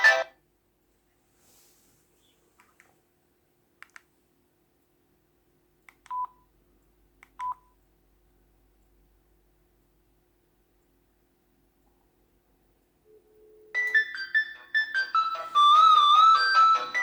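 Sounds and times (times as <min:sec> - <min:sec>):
short phone beeps: 0:00.0 - 0:00.3.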